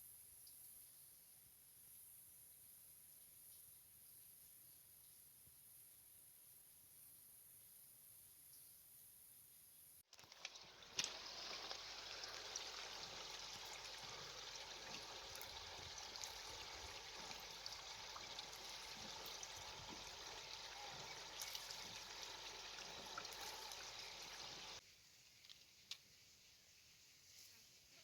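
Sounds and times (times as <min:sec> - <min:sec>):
spring water trickling: 0:10.1 - 0:24.8.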